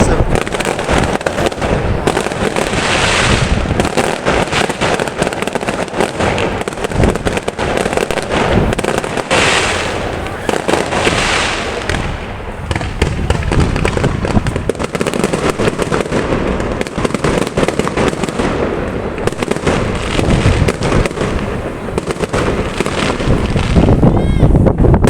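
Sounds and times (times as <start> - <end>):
firework booms: 0.0 - 25.0
firework crackling: 0.0 - 25.0.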